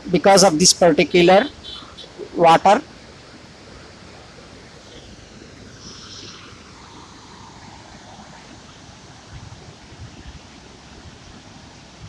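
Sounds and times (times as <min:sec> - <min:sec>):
rushing water: 0:00.0 - 0:12.0.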